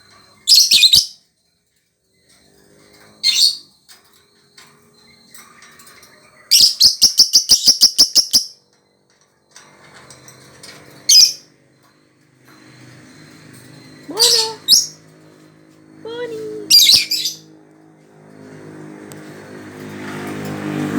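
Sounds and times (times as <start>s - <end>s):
lovebird chirping: 6.3s - 8.6s, 14.1s - 15.0s, 16.0s - 17.5s.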